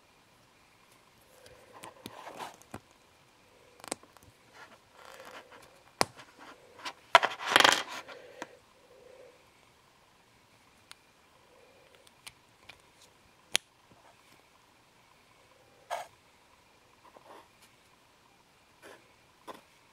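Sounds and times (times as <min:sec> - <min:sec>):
packaging rustling and scraping: 0:04.5 - 0:08.2.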